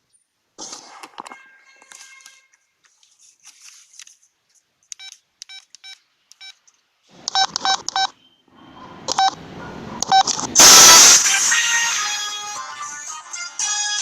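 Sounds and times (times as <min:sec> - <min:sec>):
phone keypad beeping: 0:07.3 - 0:08.2, 0:09.1 - 0:09.4, 0:10.0 - 0:10.5.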